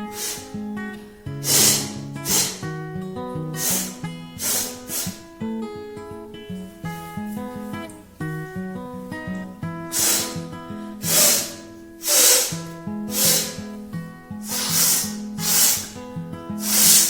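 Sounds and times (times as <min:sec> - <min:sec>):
person blowing air through nose: 0:00.0 - 0:02.7, 0:03.6 - 0:05.4, 0:09.9 - 0:13.8, 0:14.4 - 0:16.0, 0:16.6 - 0:17.0
plucked guitar music: 0:02.0 - 0:04.4, 0:05.3 - 0:09.9.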